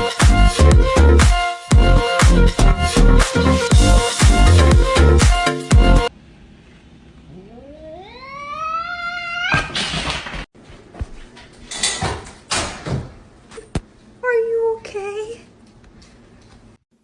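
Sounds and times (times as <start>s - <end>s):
cat yowling: 7.3s - 9.8s.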